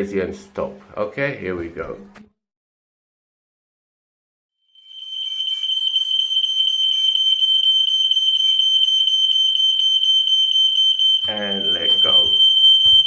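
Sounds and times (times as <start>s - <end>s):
smoke alarm shrill tone: 4.6s - 13.0s.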